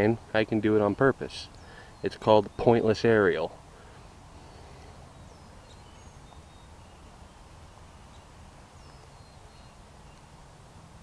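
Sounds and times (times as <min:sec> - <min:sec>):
low outdoor rumble and hiss: 0:00.0 - 0:11.0
faint high bird chirps: 0:04.4 - 0:10.4.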